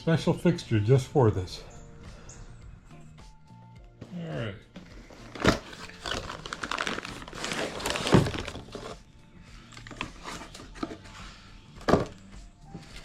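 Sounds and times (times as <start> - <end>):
packaging crackling and rustling: 5.1 - 9.0, 9.7 - 11.0.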